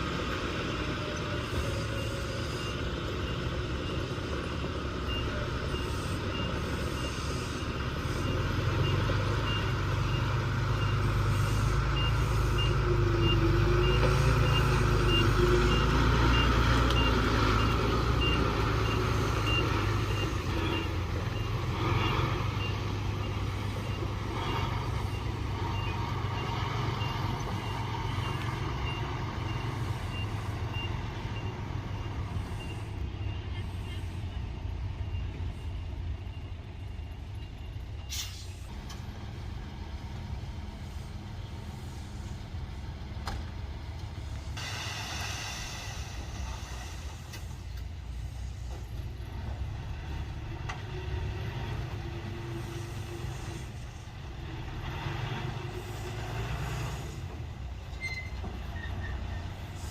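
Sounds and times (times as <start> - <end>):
diesel engine running under load: 0.0 - 59.9
reversing alarm beeping: 0.6 - 38.7.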